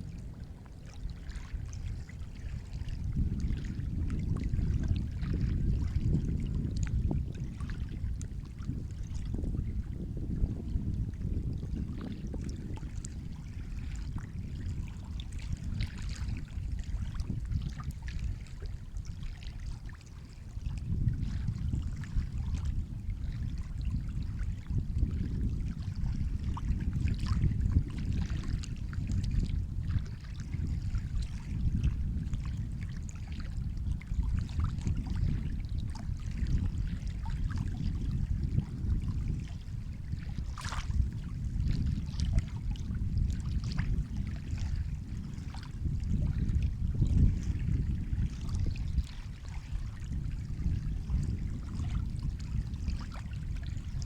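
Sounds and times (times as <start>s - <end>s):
sea water lapping: 0.0s - 10.4s, 11.0s - 54.0s
water splashes: 0.1s - 9.6s, 11.5s - 22.7s, 26.5s - 31.6s, 34.4s - 37.8s, 45.4s - 48.1s.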